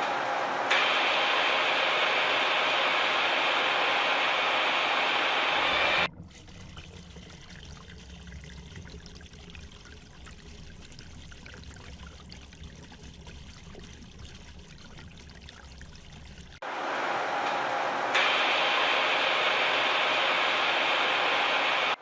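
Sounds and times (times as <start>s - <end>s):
loud hiss: 0.0s - 6.1s, 16.6s - 22.0s
water trickling: 6.1s - 16.6s.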